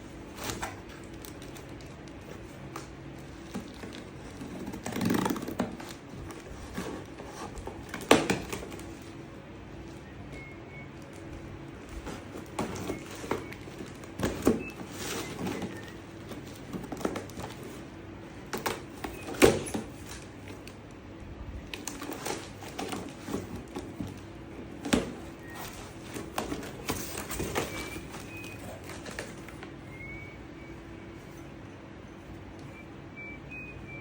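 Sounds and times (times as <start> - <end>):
packaging being handled: 0.1 - 21.0, 21.6 - 30.1.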